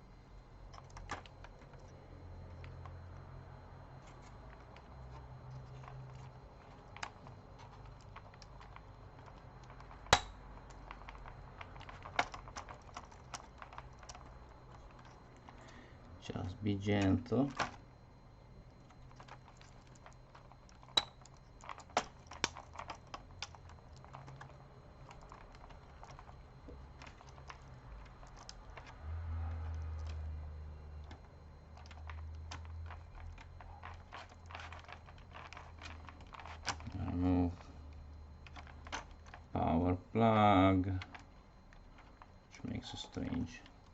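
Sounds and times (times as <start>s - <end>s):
low hum: 0.0s - 43.9s
laptop parts clicking and tapping: 4.1s - 15.8s, 18.9s - 36.9s
tools clicking on laptop parts: 4.2s - 15.8s.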